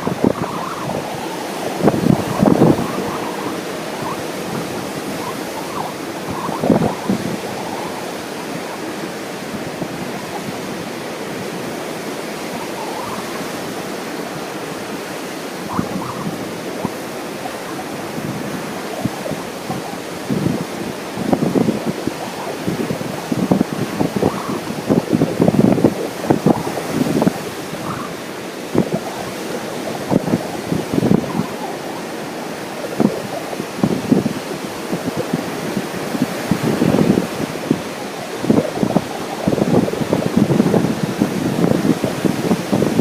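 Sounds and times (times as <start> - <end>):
ocean surf washing on beach: 0.0 - 43.0
wind buffeting microphone: 0.0 - 43.0.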